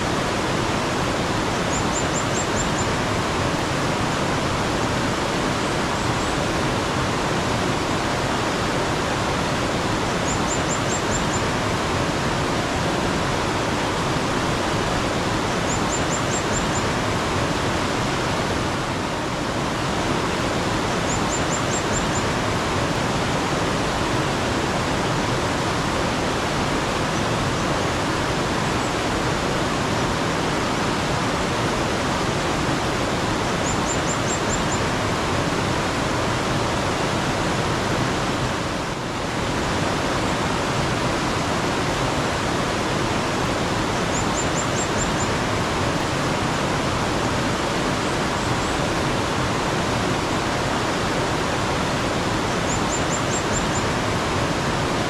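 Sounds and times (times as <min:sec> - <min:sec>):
water flowing: 0:00.0 - 0:55.0
bird chirping: 0:01.7 - 0:03.0, 0:10.2 - 0:11.5, 0:15.7 - 0:16.9, 0:21.1 - 0:22.3, 0:33.6 - 0:34.8.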